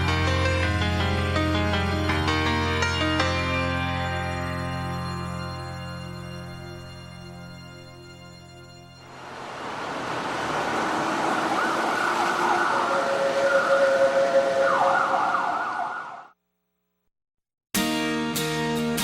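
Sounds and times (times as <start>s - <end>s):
wash of noise: 9.1s - 16.2s
siren-like wailing tones: 10.4s - 16.4s.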